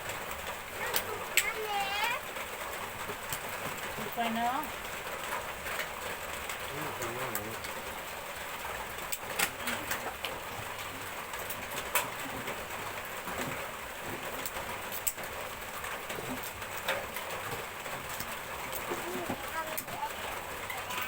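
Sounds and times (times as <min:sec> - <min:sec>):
steady rain falling: 0:00.0 - 0:21.0
sharp cracks and clicks: 0:09.0 - 0:12.1, 0:14.4 - 0:15.3.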